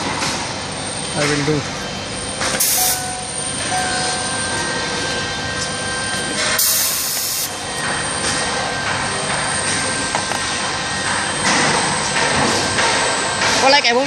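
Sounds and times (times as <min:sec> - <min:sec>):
machinery humming and hissing: 0:00.0 - 0:14.0
compressed air blast: 0:02.6 - 0:03.0, 0:06.6 - 0:07.6.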